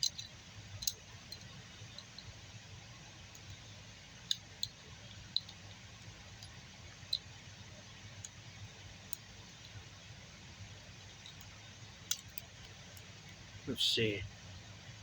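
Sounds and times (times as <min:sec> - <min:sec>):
small metal clicks of pick: 0:00.0 - 0:02.3, 0:11.2 - 0:13.4.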